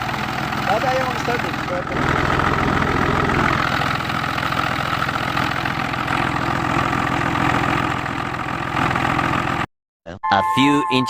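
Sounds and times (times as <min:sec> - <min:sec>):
diesel engine idling: 0:00.0 - 0:09.7.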